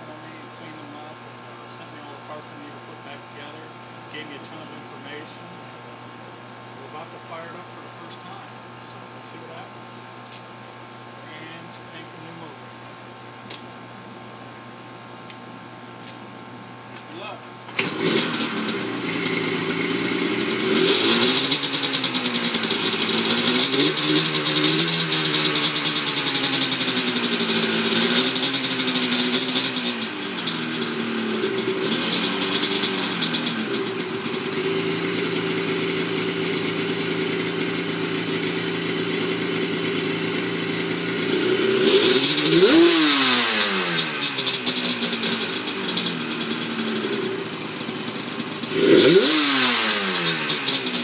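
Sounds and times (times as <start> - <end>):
two-stroke engine revving and idling: 17.2 - 51.0.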